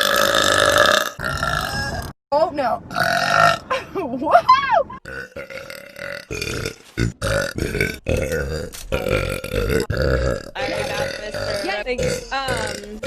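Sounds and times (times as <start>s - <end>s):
girl belching: 0.0s - 2.1s, 3.0s - 3.7s, 5.0s - 13.0s.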